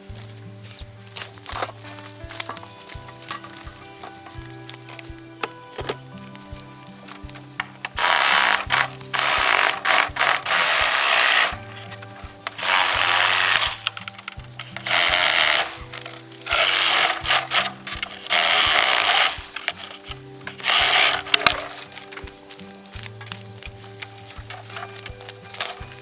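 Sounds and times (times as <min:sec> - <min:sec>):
background music: 0:00.0 - 0:26.0
bamboo being cut: 0:00.0 - 0:26.0.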